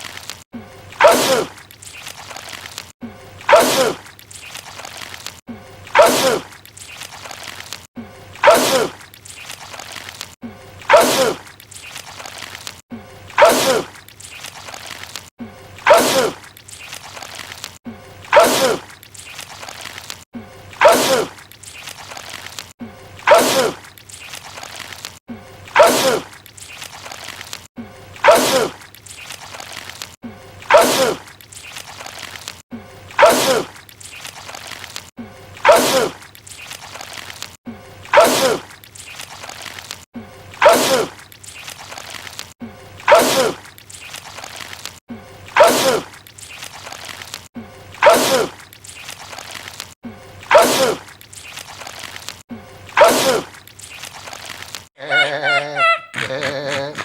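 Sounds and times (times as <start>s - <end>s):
man sneezing: 28.2s - 28.7s, 43.1s - 43.6s, 45.6s - 46.1s, 50.5s - 51.0s, 53.0s - 53.5s
cartoonish laughing: 55.0s - 57.0s.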